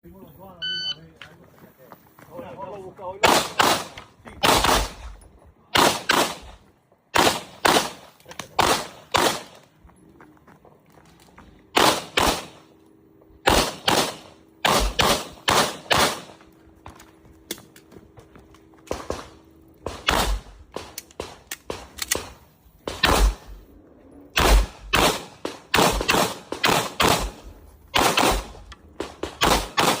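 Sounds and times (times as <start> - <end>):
pistol shots with echo: 3.2 - 5.1, 5.7 - 9.6, 11.7 - 12.6, 13.4 - 16.4, 18.9 - 23.6, 24.4 - 30.0.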